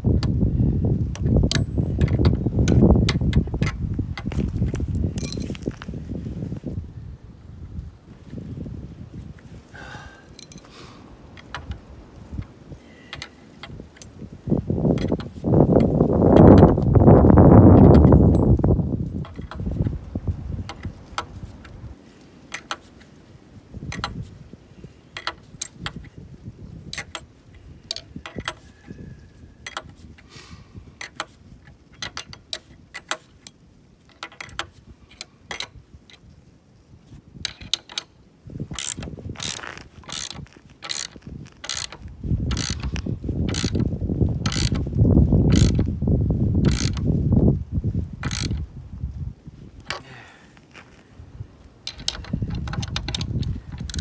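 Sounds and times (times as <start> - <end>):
ratchet wrench clicking: 38.7 - 43.9, 44.5 - 44.9, 45.5 - 45.9, 46.6 - 47.1, 48.2 - 48.6, 51.9 - 54.0.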